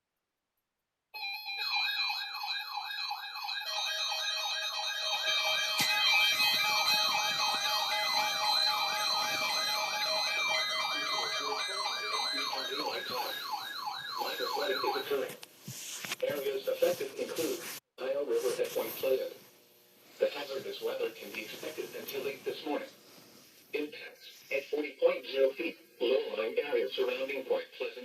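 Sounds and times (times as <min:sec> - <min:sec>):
electronic siren yelping: 0:01.2 - 0:15.3.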